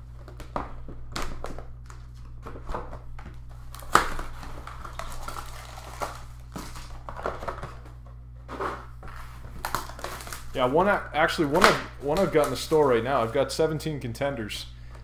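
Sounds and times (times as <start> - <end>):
wrappers crinkling and rustling: 3.6 - 7.9, 9.0 - 10.7, 11.3 - 13.6.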